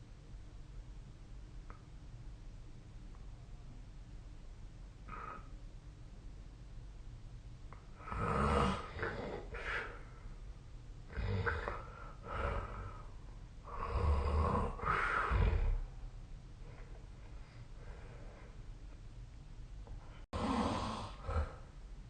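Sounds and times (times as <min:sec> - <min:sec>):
person snoring: 0:05.1 - 0:05.5, 0:08.0 - 0:10.0, 0:11.1 - 0:15.9, 0:20.4 - 0:21.7.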